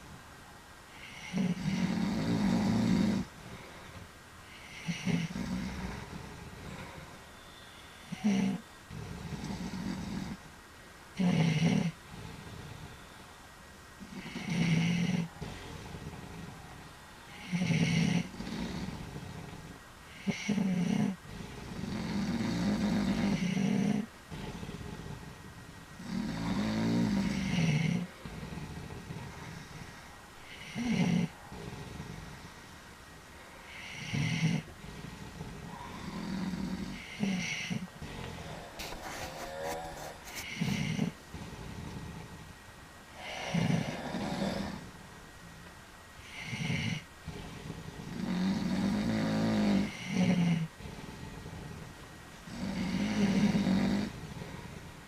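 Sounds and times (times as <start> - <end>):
man snoring: 1.0 - 3.3, 4.5 - 6.9, 8.1 - 10.4, 11.2 - 12.6, 14.0 - 16.5, 17.3 - 25.3, 26.0 - 29.9, 30.5 - 32.6, 33.7 - 42.4, 43.2 - 44.9, 46.2 - 51.8, 52.5 - 54.6.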